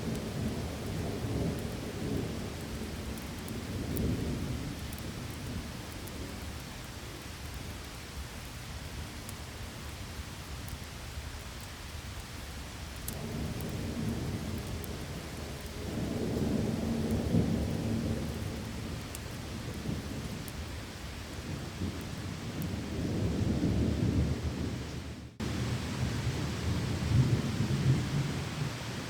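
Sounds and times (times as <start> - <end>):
heavy rain: 0.0 - 29.0
rolling thunder: 13.2 - 20.5, 21.4 - 28.7.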